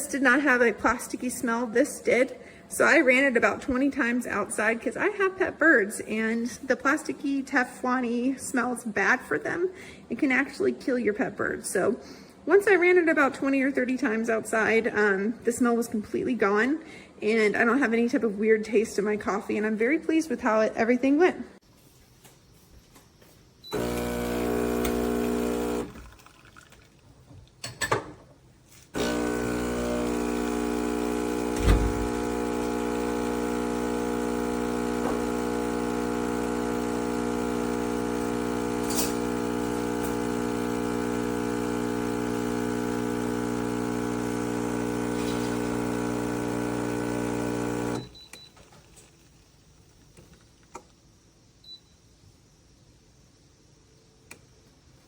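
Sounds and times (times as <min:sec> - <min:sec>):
espresso machine pump buzzing: 0:23.7 - 0:26.4, 0:29.0 - 0:48.2.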